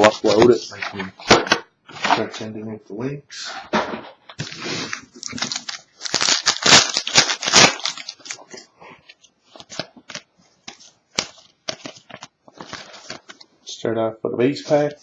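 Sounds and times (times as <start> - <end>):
wrapper crinkling and tearing: 4.4 - 8.7, 9.5 - 13.5.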